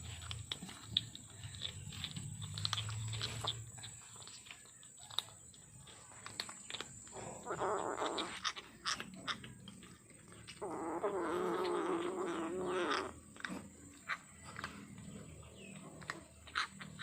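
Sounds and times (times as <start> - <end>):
kitten eating clicks: 0.0 - 11.0, 11.6 - 17.0
cat growling yowl: 7.2 - 8.6, 10.6 - 13.2.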